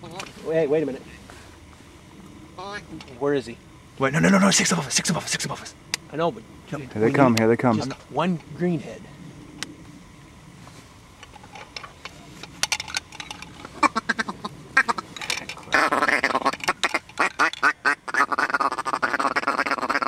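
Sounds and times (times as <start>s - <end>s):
duck call quacks and chatter: 13.8s - 15.1s, 15.7s - 20.0s.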